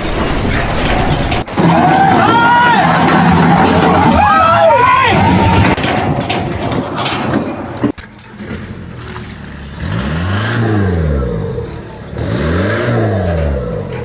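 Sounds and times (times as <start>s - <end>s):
engine revving: 8.4s - 14.0s.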